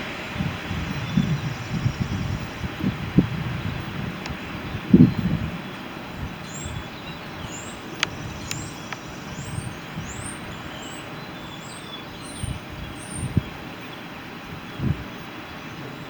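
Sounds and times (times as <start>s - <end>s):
sharp clicks: 8.0s - 9.1s.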